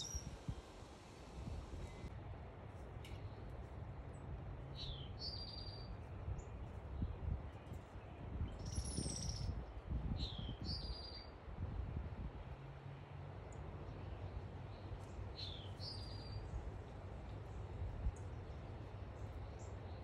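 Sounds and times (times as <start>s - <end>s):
buzzy bird trill: 0.0s - 0.4s
songbirds chirping: 13.4s - 20.0s.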